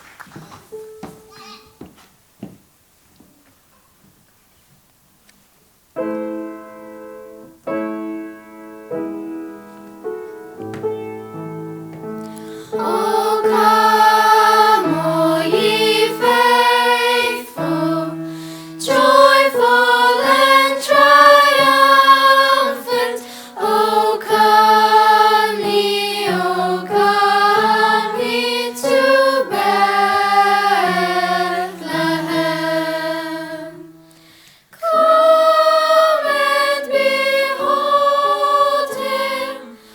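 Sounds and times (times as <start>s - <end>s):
piano chords: 6.0s - 34.2s
choir singing: 12.5s - 34.0s, 34.8s - 39.9s.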